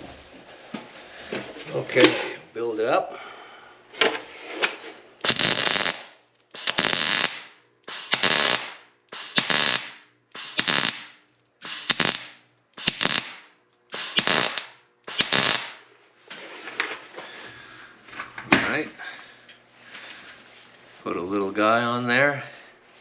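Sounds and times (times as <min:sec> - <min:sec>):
arc welder crackling: 0:05.2 - 0:16.0.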